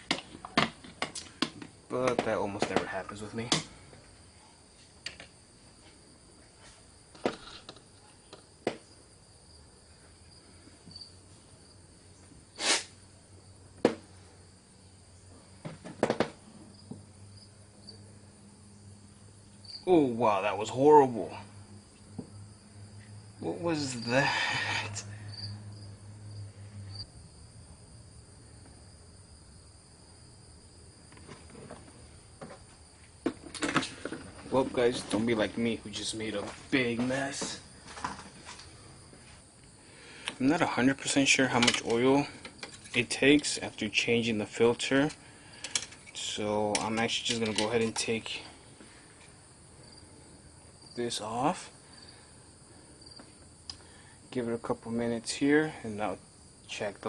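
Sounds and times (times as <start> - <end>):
crickets chirping: 0.0 - 57.0
high-pitched insect trill: 2.4 - 15.7, 16.6 - 57.0
low hum: 17.0 - 32.8.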